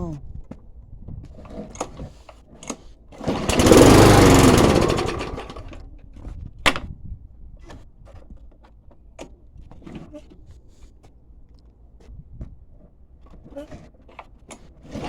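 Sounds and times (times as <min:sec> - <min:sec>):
lawnmower engine starting and running: 0:01.6 - 0:06.2, 0:14.6 - 0:15.0.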